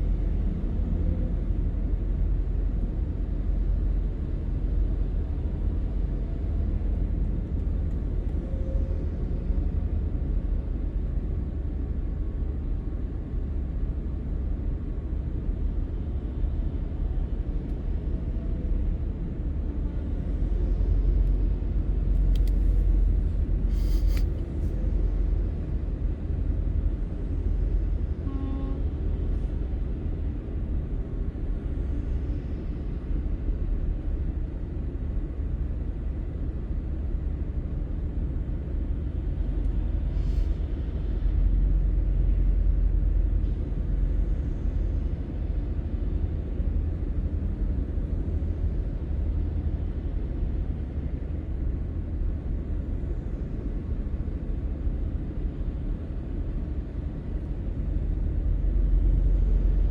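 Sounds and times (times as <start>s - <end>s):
brief clicks: 22.1s - 22.8s, 23.7s - 24.4s.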